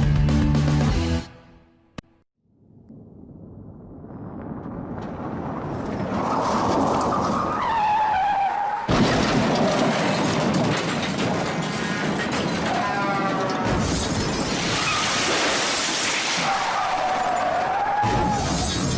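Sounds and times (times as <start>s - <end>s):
vehicle noise: 4.3s - 13.2s.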